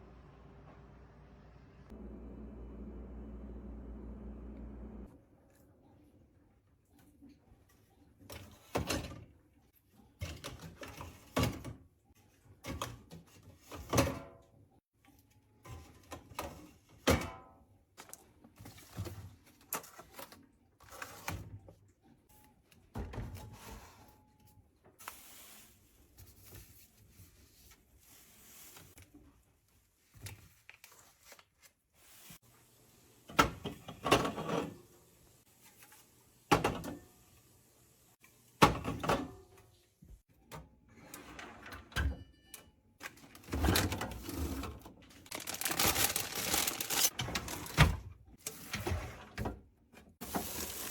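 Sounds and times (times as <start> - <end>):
groceries knocking and clinking: 42.0 - 48.2.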